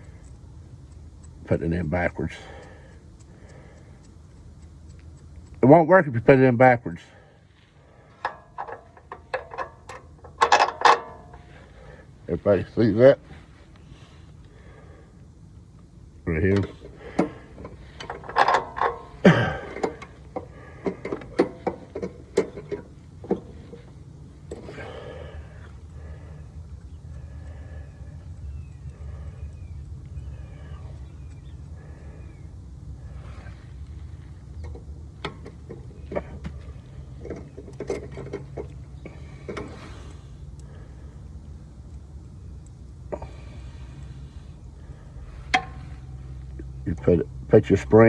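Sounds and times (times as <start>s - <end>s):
low steady rumble: 0.0s - 48.0s
metal part falling: 8.2s - 11.4s
metallic clicks and clinks: 8.2s - 11.5s, 16.6s - 23.5s.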